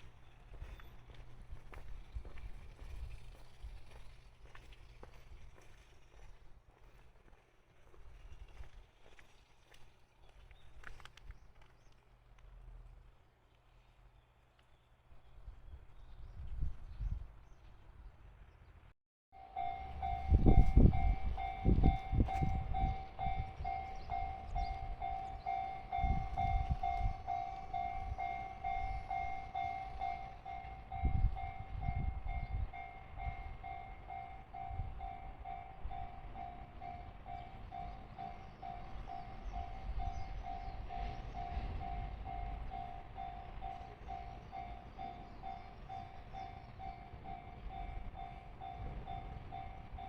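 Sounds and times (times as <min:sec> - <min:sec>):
level crossing warning bell: 0:19.3 - 0:50.0.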